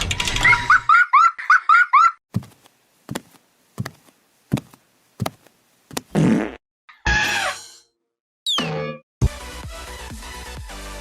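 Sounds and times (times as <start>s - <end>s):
rising chirp-like squeaks: 0.1s - 2.2s.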